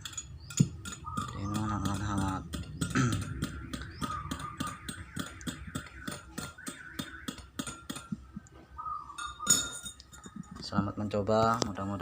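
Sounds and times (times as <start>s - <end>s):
metal spoon clinking in glass: 9.2s - 10.4s.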